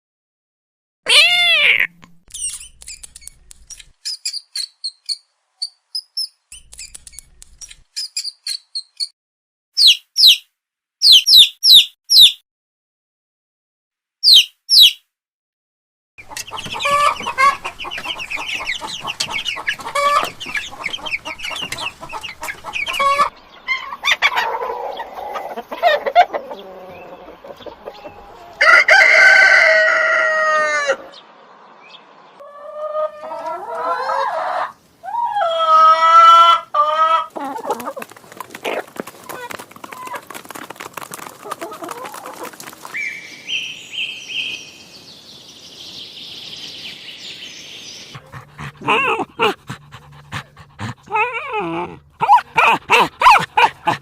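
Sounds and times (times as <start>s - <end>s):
high squeaks in quick groups: 1.1s - 5.8s
hens cackling and clucking: 16.2s - 31.2s, 32.4s - 43.0s, 48.1s - 54.0s
rooster crowing: 28.2s - 31.2s.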